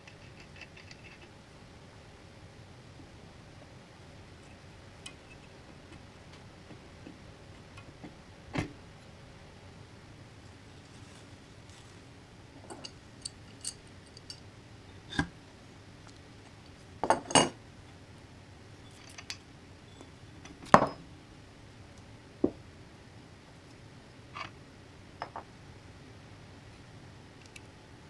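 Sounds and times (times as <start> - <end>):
metal tools clinking: 12.7 - 14.4.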